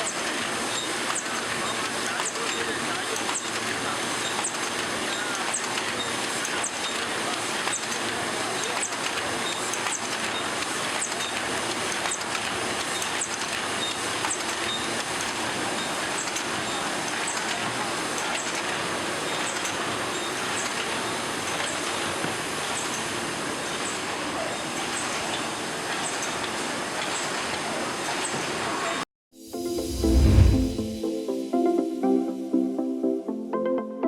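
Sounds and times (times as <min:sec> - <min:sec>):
machinery running: 0:29.4 - 0:31.5.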